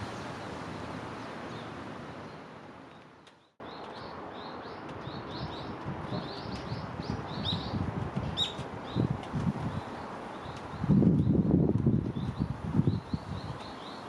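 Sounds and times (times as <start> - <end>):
outdoor background noise: 0.0 - 14.0
small birds chirping: 1.2 - 14.0
low wind rumble: 4.0 - 13.8.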